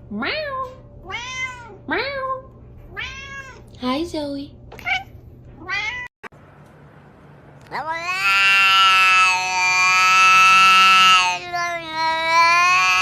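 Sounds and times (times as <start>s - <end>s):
cat yowling: 0.2s - 3.6s, 7.7s - 13.0s.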